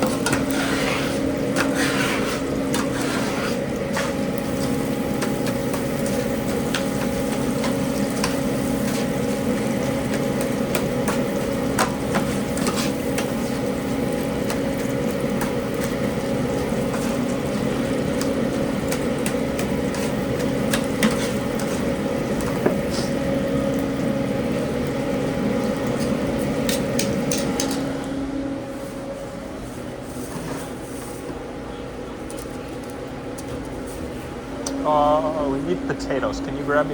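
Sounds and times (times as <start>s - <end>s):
utensils clinking on pans: 0.0s - 23.2s, 25.9s - 27.9s
droning equipment hum: 0.0s - 36.9s.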